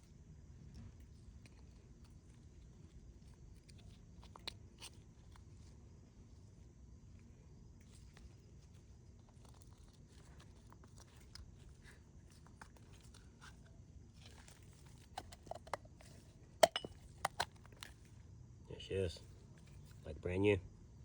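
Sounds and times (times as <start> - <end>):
sharp knocks of metal parts: 16.6 - 17.0.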